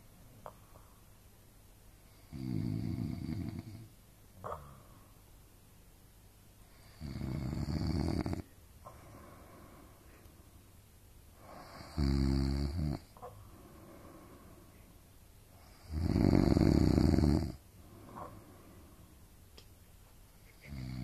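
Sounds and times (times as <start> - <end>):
person snoring: 2.1 - 3.9, 6.8 - 9.9, 11.4 - 13.1, 15.6 - 18.6, 20.6 - 21.0.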